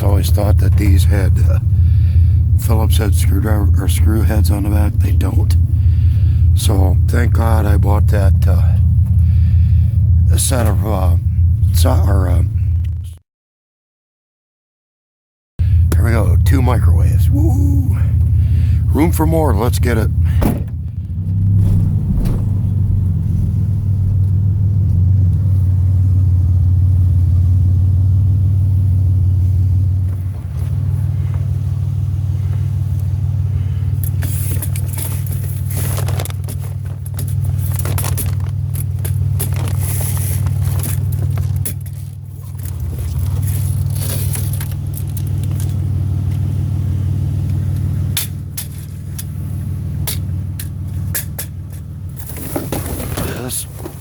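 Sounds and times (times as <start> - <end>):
car engine and road rumble: 0.0 - 13.2, 15.6 - 54.0
rattles and clicks: 20.2 - 25.7, 34.0 - 46.5, 47.4 - 54.0.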